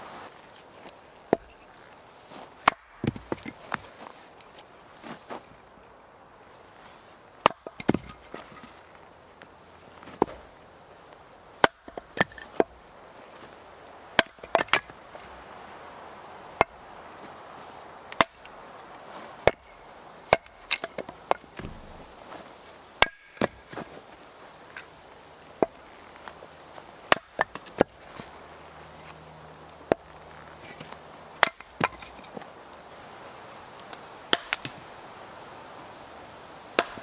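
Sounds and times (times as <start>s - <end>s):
axe chopping logs: 2.6s - 3.9s, 7.4s - 8.7s, 11.6s - 12.8s, 14.1s - 15.0s, 16.6s - 16.8s, 18.1s - 18.6s, 19.4s - 22.4s, 23.0s - 24.0s, 25.6s - 25.8s, 27.0s - 28.3s, 29.8s - 32.4s, 34.3s - 34.8s, 36.8s - 37.0s.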